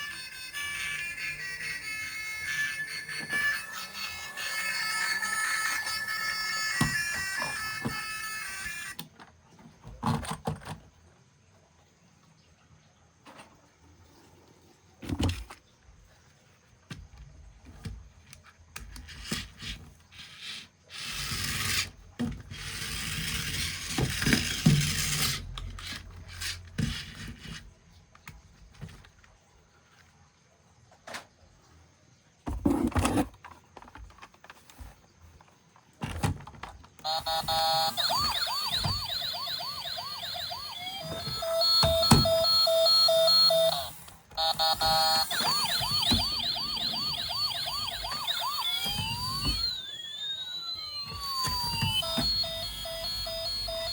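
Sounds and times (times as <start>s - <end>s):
toy pulsing beep: 0.0s - 9.0s, 37.0s - 53.9s
toy siren wailing: 0.0s - 9.0s, 37.0s - 53.9s.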